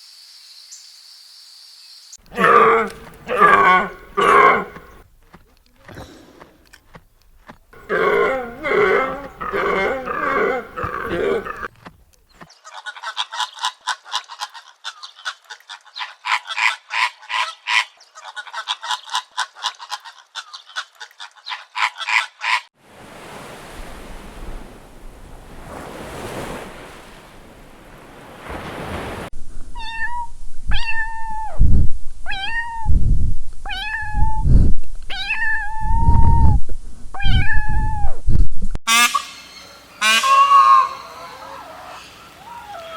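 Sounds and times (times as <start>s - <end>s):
short animal calls: 7.8s - 11.7s
cat meowing: 29.8s - 31.6s, 32.3s - 32.9s, 33.7s - 34.4s, 35.1s - 36.4s.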